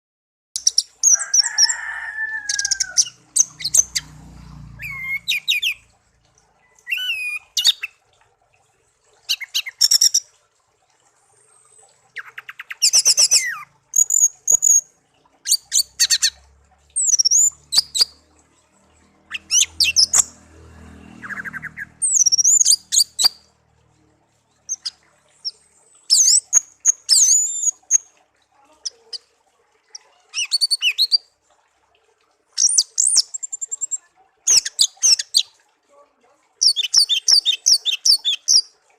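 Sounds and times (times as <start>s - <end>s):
songbird singing: 0.6s - 6.0s, 11.4s - 16.4s, 17.0s - 20.4s, 21.1s - 29.3s, 36.6s - 38.7s.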